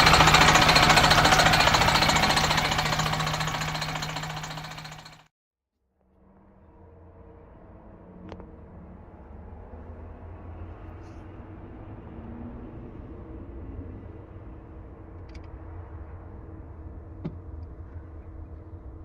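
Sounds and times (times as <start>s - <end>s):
misfiring diesel engine rumbling: 0.0s - 5.3s.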